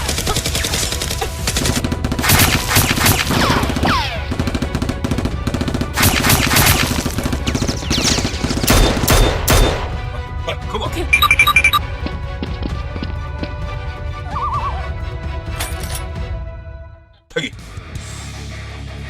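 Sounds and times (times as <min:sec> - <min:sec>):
automatic gunfire effects: 0:00.0 - 0:10.0
background music: 0:00.0 - 0:19.0.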